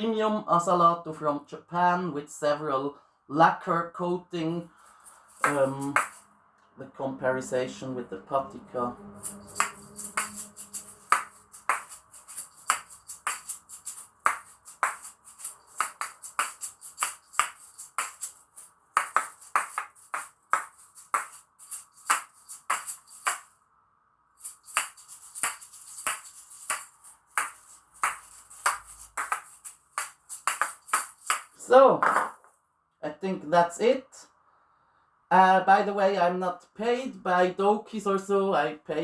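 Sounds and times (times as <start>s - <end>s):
asalato balls clacking: 5.4s - 6.2s, 9.3s - 18.4s, 19.0s - 21.4s, 24.7s - 32.4s
asalato fill rattling: 8.5s - 23.5s.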